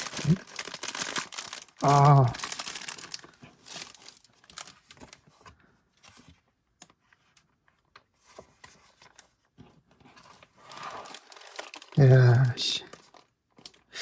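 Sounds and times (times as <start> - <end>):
packaging clicks and rustling: 0.0 - 5.3, 10.1 - 13.9.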